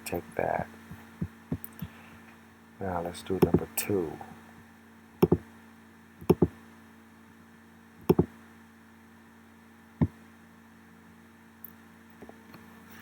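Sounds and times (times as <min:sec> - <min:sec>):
faint steady hum: 0:00.0 - 0:13.0
computer mouse clicks: 0:05.2 - 0:05.4, 0:06.2 - 0:06.5, 0:08.0 - 0:08.3.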